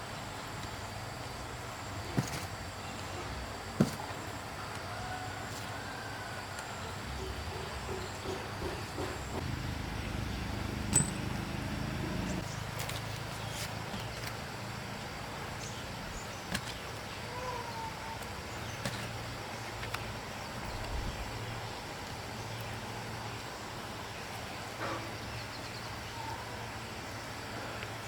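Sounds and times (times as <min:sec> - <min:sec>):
low hum: 0:09.4 - 0:12.4.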